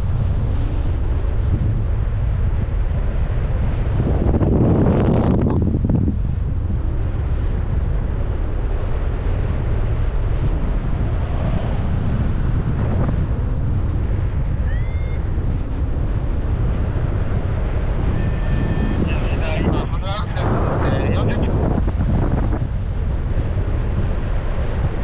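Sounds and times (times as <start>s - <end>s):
wind buffeting microphone: 0.0s - 25.0s
rising tone: 14.0s - 16.0s.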